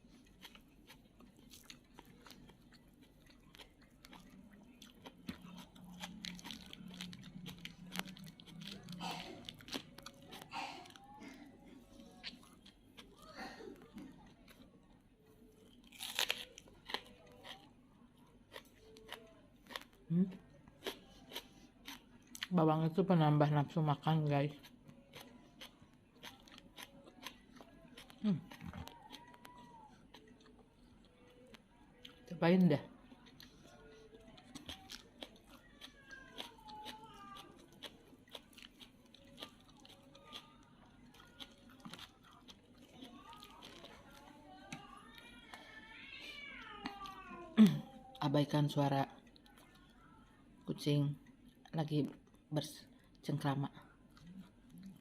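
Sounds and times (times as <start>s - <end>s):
person chewing crunchy food: 0.0s - 22.5s, 24.5s - 32.2s, 33.0s - 47.8s
cats meowing faintly: 44.7s - 48.2s.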